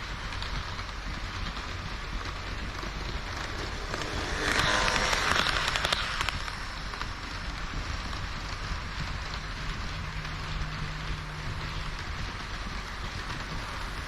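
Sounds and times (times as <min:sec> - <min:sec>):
model train wheels rattling on rails: 0:00.0 - 0:14.0.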